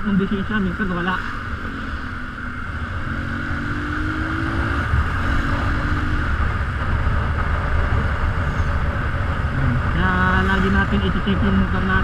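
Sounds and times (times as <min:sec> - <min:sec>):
motorcycle engine running: 0:00.0 - 0:12.0
wind rumbling on microphone: 0:01.2 - 0:12.0.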